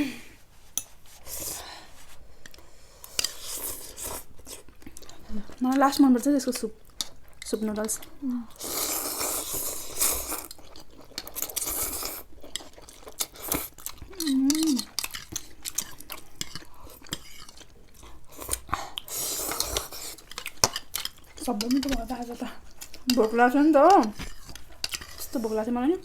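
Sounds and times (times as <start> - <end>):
chewing: 2.4 - 25.6
person humming: 14.1 - 15.0
cutlery clinking against bowls: 19.5 - 25.4.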